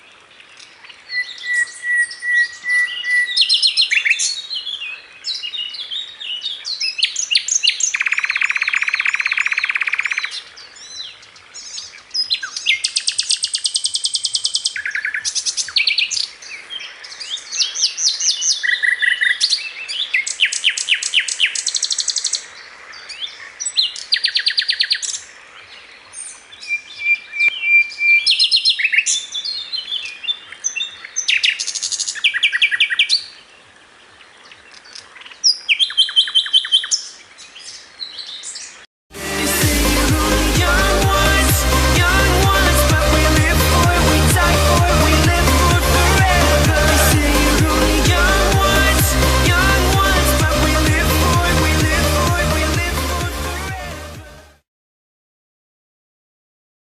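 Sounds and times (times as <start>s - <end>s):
songbird singing: 0.0s - 38.9s.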